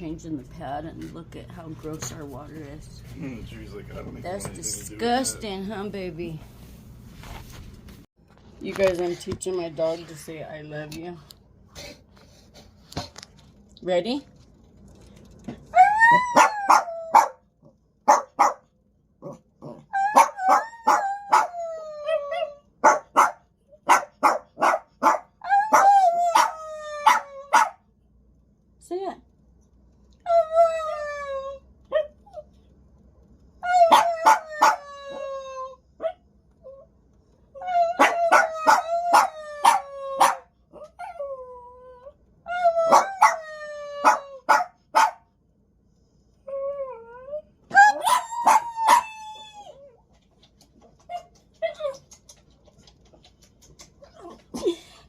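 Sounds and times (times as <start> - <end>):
dog howling: 15.7 - 17.4, 19.8 - 22.6, 25.4 - 27.7, 33.6 - 36.1, 37.6 - 44.6, 46.8 - 50.0
dog whining: 15.7 - 17.4, 19.3 - 22.7, 25.4 - 27.7, 30.2 - 32.5, 33.6 - 36.9, 37.5 - 44.6, 46.5 - 50.1, 51.0 - 52.4
dog barking: 16.3 - 17.4, 18.0 - 18.7, 20.1 - 21.5, 22.8 - 27.8, 33.9 - 34.8, 38.0 - 40.5, 42.9 - 43.4, 44.0 - 45.3, 47.8 - 49.1.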